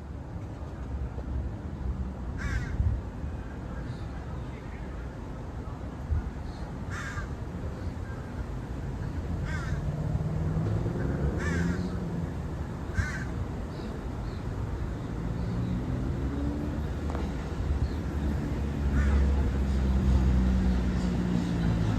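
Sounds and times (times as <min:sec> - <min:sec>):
crow cawing: 0:02.4 - 0:02.8, 0:06.9 - 0:07.3, 0:09.4 - 0:09.8, 0:11.4 - 0:11.9, 0:12.9 - 0:13.3, 0:18.2 - 0:20.1.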